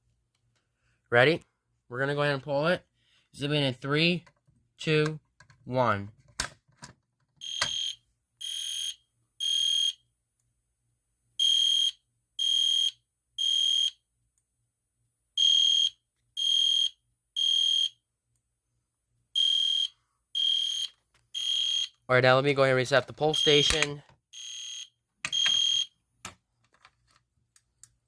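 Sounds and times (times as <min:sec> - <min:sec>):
fire alarm beeping: 0:07.4 - 0:10.0, 0:11.4 - 0:14.0, 0:15.4 - 0:18.0, 0:19.4 - 0:22.0, 0:23.3 - 0:26.0.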